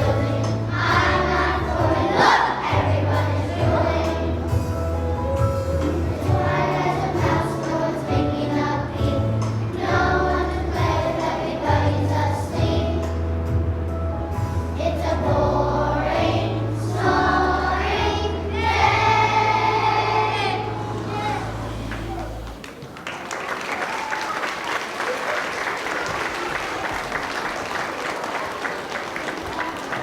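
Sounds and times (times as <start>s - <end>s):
children's choir singing: 0.0s - 13.7s, 14.3s - 22.1s.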